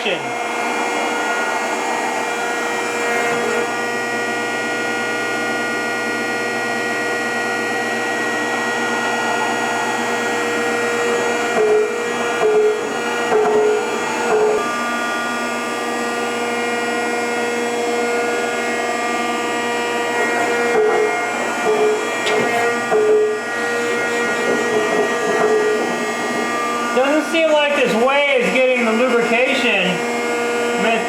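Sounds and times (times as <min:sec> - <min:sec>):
hydraulic machine humming and whining: 0:00.0 - 0:31.0.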